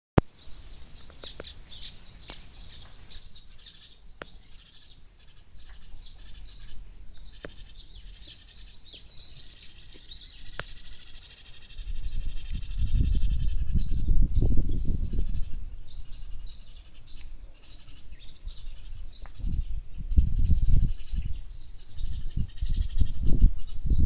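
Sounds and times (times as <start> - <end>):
songbirds chirping: 0.2 - 24.0.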